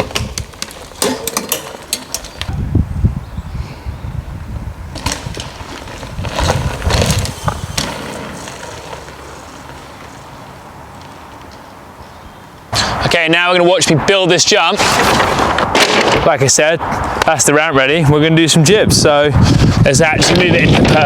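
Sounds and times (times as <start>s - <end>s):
mountain bike clicks and rattles: 0.0s - 2.6s, 4.9s - 11.9s
bike landing thuds: 0.0s - 2.7s, 4.8s - 10.5s.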